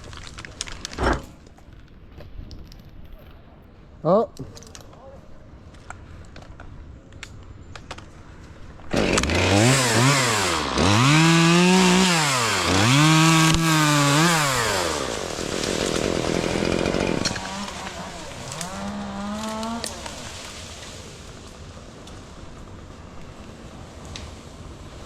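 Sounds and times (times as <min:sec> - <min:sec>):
chainsaw revving: 0:08.9 - 0:20.5.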